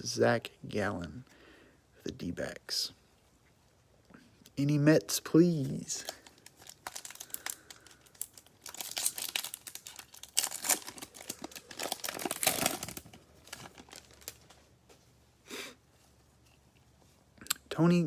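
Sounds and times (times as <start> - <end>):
plastic wrapper tearing and crinkling: 5.9 - 14.6.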